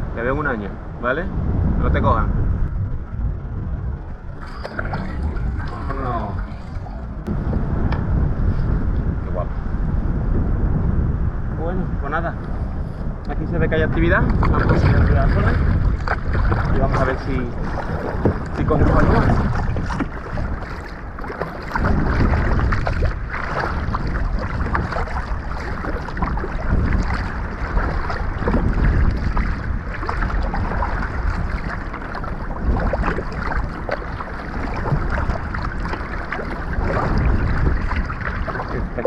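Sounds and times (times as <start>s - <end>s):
wind buffeting microphone: 0.0s - 39.0s
water splashing around kayak: 3.2s - 8.9s, 13.8s - 39.0s.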